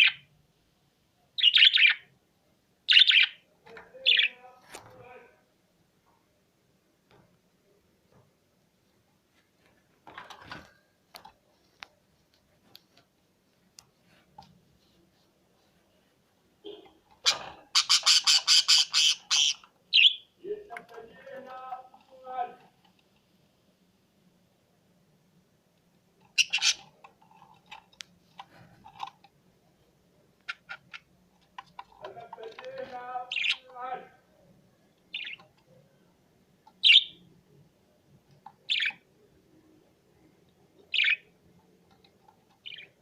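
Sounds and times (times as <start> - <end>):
cage bird calling: 0.0 - 0.3, 1.4 - 2.1, 2.9 - 3.4, 4.0 - 4.4, 16.6 - 20.4, 26.3 - 27.0, 33.2 - 33.7, 35.1 - 35.5, 36.7 - 37.3, 38.6 - 39.0, 40.8 - 41.4, 42.6 - 43.0
soft bird chirps and scratches: 10.2 - 20.2, 26.2 - 29.4, 30.4 - 33.7, 35.1 - 35.8, 40.9 - 43.0
cage birds clicking and tapping: 26.2 - 29.4, 30.4 - 33.8.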